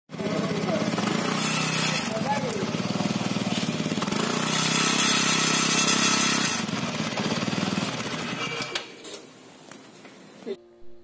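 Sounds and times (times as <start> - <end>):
scooter engine running: 0.1 - 8.8.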